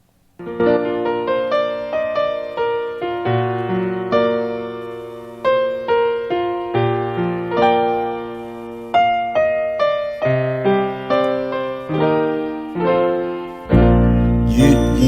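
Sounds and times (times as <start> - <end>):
keyboard piano single notes: 0.4 - 15.0
low bass note: 13.8 - 15.0.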